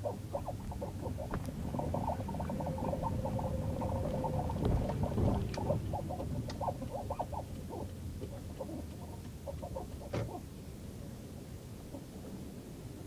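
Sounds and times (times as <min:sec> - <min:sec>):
low rumble: 0:00.2 - 0:09.2
steady tone: 0:00.4 - 0:06.9.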